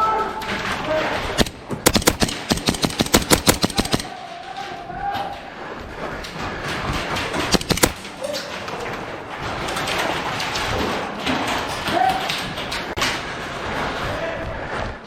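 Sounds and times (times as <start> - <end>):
airsoft gunshots: 1.4 - 4.2, 7.5 - 8.3.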